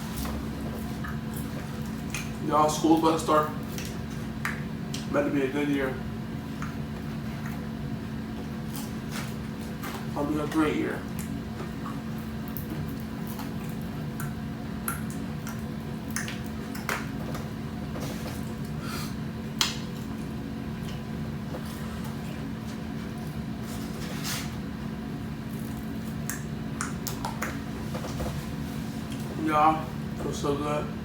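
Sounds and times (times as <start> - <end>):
steady low hum: 0.0 - 31.0
chewing and mouth noises: 0.1 - 2.4, 11.0 - 18.8, 25.3 - 28.2
mouth clicks and smacks: 13.4 - 17.4, 26.2 - 27.6.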